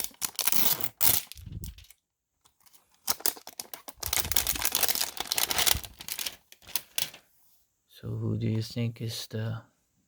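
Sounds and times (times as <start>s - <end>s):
card packaging crinkling: 0.0s - 7.2s.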